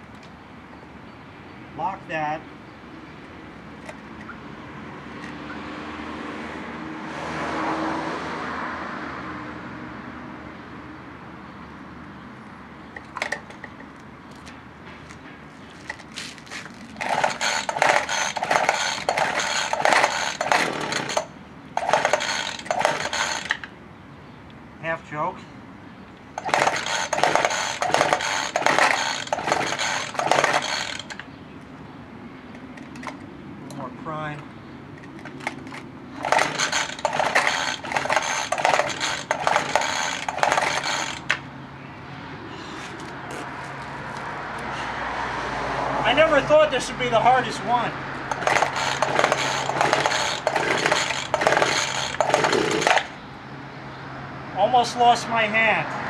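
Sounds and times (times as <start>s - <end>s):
road vehicle passing: 2.5s - 56.0s
recoil starter cord pulls: 15.8s - 23.7s, 26.4s - 31.3s, 35.0s - 41.4s, 48.3s - 53.2s.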